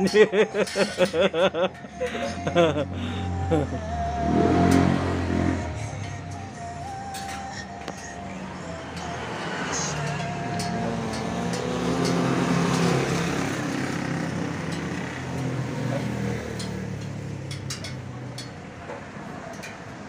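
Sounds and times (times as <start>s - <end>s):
vehicle engine running: 0.7s - 20.0s.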